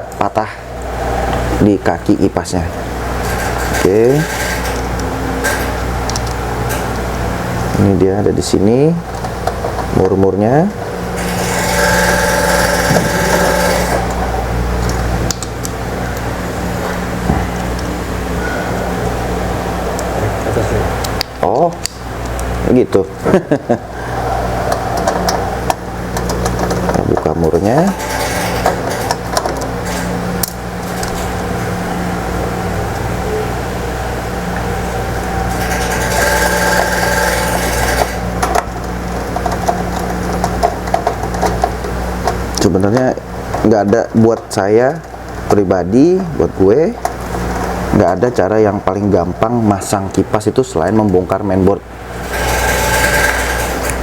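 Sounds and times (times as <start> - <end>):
low mechanical hum: 0.0 - 54.0
small motor whirring: 3.2 - 6.1, 11.2 - 14.2, 27.4 - 31.6, 35.5 - 38.3, 52.2 - 54.0.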